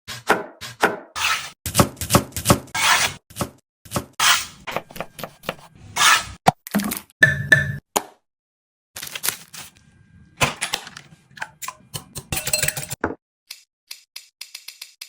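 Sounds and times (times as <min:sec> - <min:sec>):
knife chopping on cutting board: 0:00.1 - 0:06.3
knife rasping strokes: 0:01.2 - 0:01.6, 0:02.8 - 0:03.2, 0:04.2 - 0:06.4.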